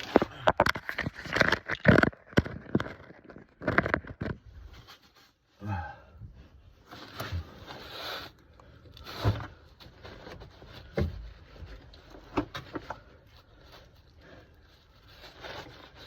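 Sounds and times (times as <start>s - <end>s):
handling rubbing and scraping: 6.7s - 16.0s.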